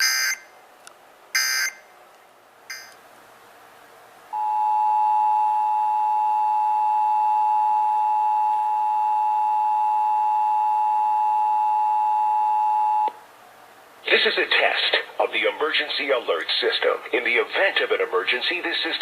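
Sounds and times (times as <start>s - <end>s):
two-tone alert signal: 1.4s - 1.8s, 2.7s - 2.9s.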